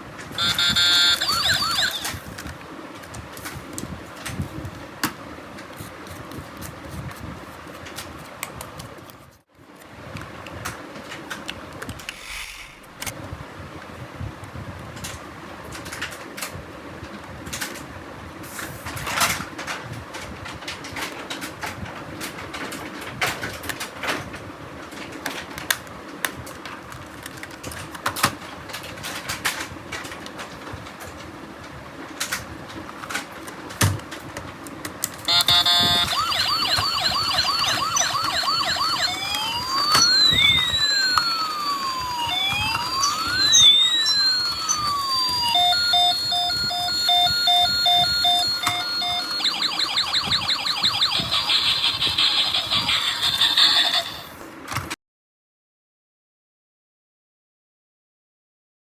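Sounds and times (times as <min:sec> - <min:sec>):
toy police siren wailing: 0:00.4 - 0:02.3, 0:35.3 - 0:54.4
clicks and taps handling a toy: 0:25.2 - 0:28.4.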